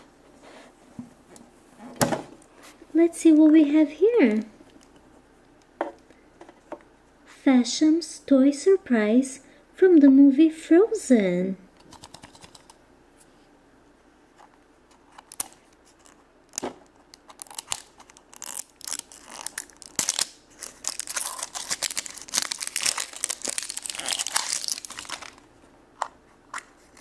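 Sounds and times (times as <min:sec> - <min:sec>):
plastic packet crinkling: 0:15.2 - 0:25.5.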